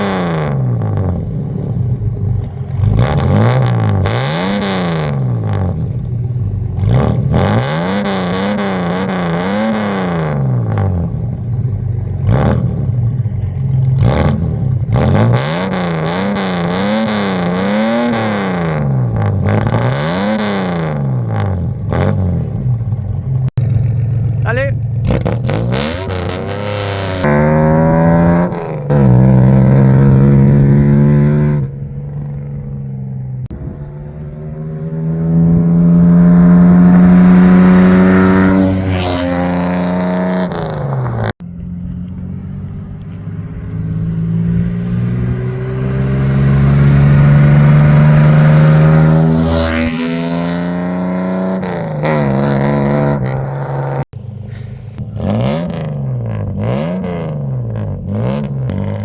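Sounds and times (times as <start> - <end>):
car engine revving: 0.0 - 59.0.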